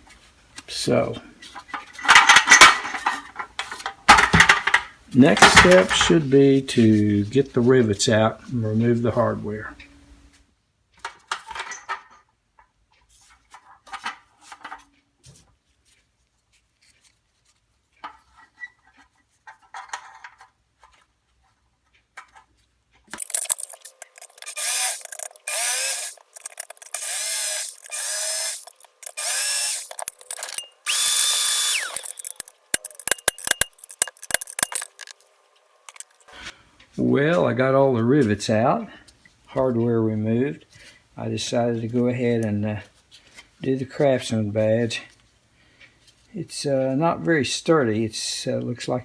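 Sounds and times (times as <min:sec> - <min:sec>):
power drill drilling metal: 0:05.4 - 0:06.2, 0:23.2 - 0:35.2, 0:35.9 - 0:36.2.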